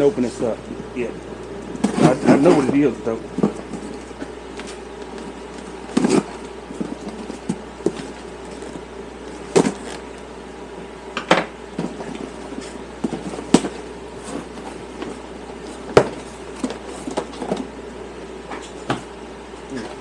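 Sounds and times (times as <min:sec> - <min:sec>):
steady low hum: 0:00.0 - 0:20.0
packaging knocks and rustles: 0:01.7 - 0:10.2.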